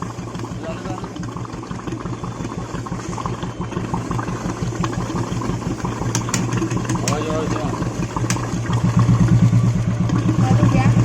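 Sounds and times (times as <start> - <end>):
motorcycle engine idling: 0.0 - 11.0
sharp clicks: 6.0 - 7.3, 8.2 - 8.6.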